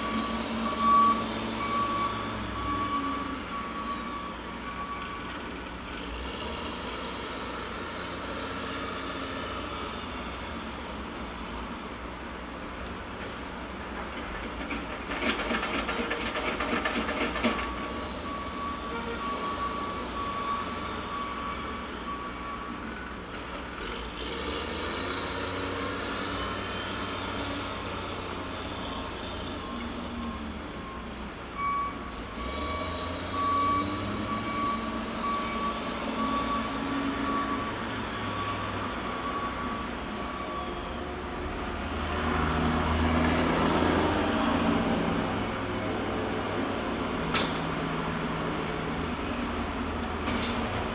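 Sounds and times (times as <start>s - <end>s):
heavy machinery engine rumble: 0.0s - 50.9s
rattling clatter: 13.9s - 17.9s.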